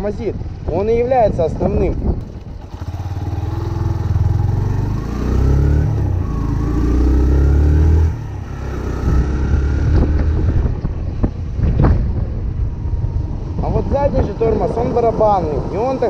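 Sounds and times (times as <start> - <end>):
motorcycle engine revving: 2.0 - 11.0.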